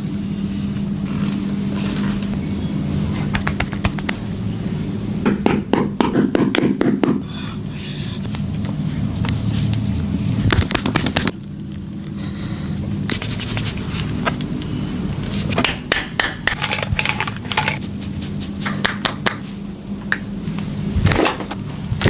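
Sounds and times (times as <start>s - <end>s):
steady low hum: 0.0s - 22.0s
hands rubbing and scraping: 12.5s - 14.4s, 16.5s - 19.4s.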